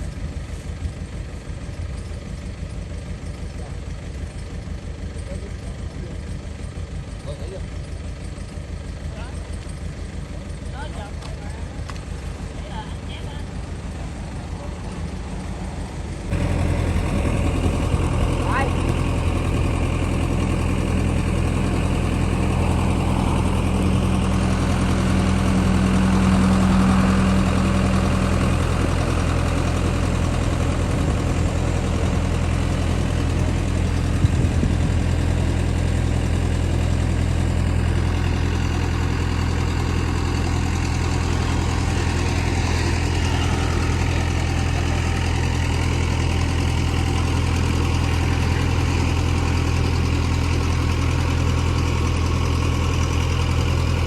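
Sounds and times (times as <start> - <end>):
excavator engine running: 0.0 - 54.0
higher hum: 16.3 - 37.1.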